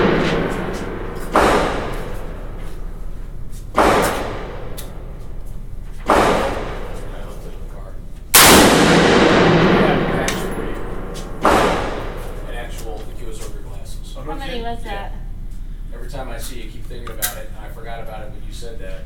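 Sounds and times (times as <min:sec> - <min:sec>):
rifle shots with echo: 0:00.0 - 0:02.9, 0:03.8 - 0:05.2, 0:06.0 - 0:07.2, 0:08.3 - 0:12.5.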